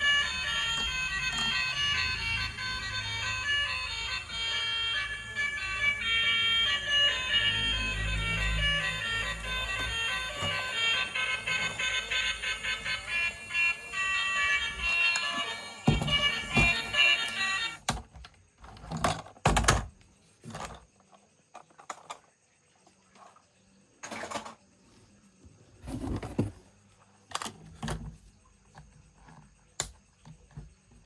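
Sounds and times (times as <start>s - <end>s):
electronic toy sound effect: 0.0s - 17.8s
plastic toy vehicles clattering: 16.0s - 22.3s, 24.0s - 24.6s.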